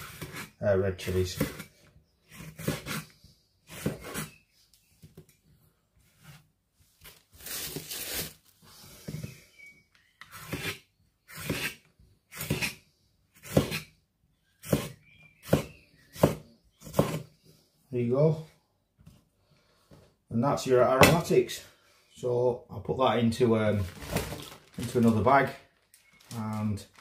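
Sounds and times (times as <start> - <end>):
knife scraping board: 0.0 - 0.6, 1.4 - 1.7, 2.3 - 3.1, 3.7 - 4.4, 10.2 - 12.8, 13.4 - 13.9, 14.6 - 17.3.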